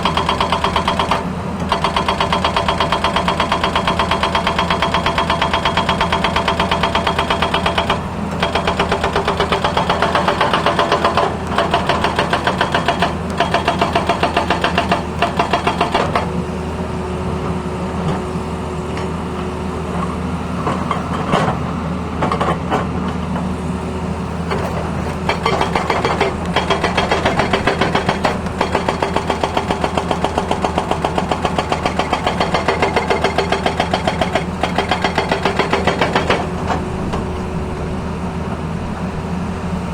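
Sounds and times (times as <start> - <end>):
hydraulic breaker hammering: 0.0 - 16.6, 24.4 - 37.4
diesel engine running: 0.0 - 39.9.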